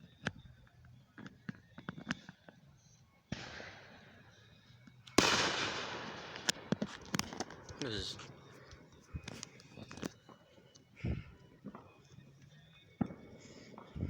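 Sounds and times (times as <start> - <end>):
fireworks popping: 5.1 - 10.4
sharp firework bang: 5.2 - 6.4
rush of firework noise: 5.2 - 8.2.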